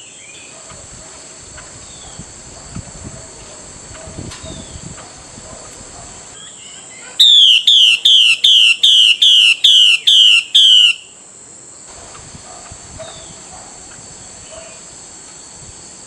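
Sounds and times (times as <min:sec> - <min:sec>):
bird call with falling notes: 0:06.4 - 0:11.1.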